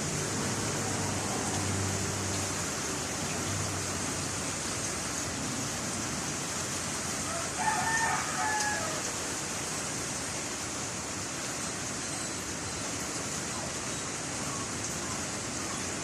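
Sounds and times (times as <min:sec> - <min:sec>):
rooster crowing: 0:07.2 - 0:09.2.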